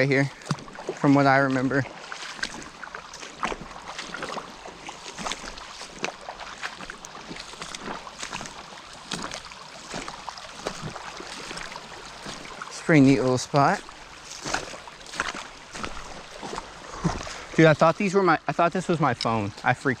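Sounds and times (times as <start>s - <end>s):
feet wading through creek water: 0.0s - 20.0s.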